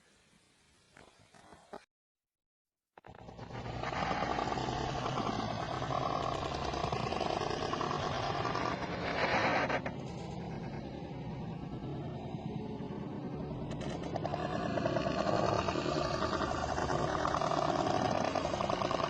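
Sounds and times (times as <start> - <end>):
person snoring: 3.5 - 9.9, 14.2 - 19.0.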